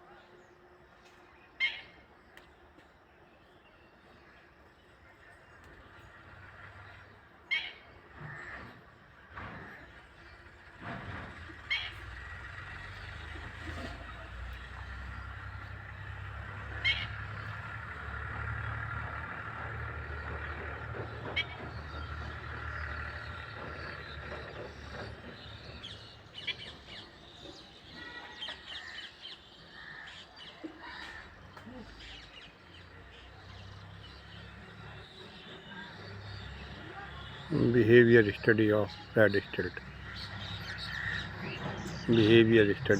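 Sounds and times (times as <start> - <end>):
passing vehicle rumble: 8.1 - 28.1, 31.1 - 42.9.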